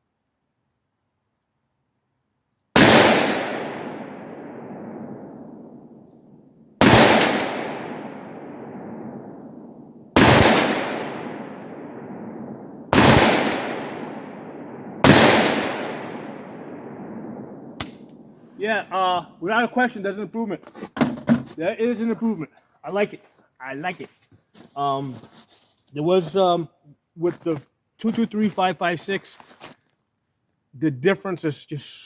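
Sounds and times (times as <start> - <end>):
rifle shots with echo: 2.8 - 6.0, 6.8 - 18.3.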